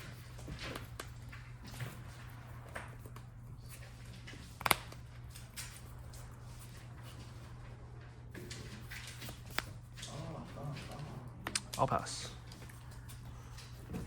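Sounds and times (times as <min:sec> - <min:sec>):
trading cards rustling and tapping: 0:00.0 - 0:07.5, 0:08.4 - 0:14.0.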